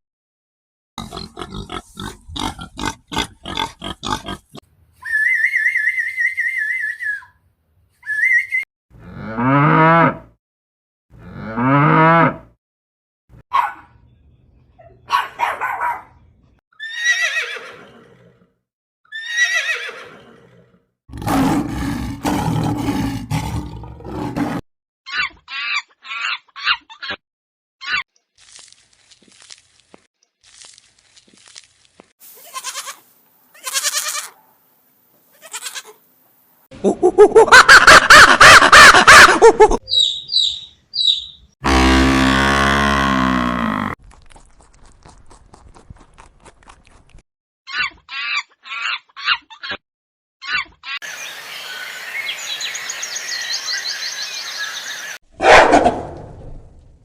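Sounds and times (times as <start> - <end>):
falling animal calls: 36.8 - 44.0
high animal call: 39.8 - 44.0
animal grunts or clicks: 44.0 - 47.2.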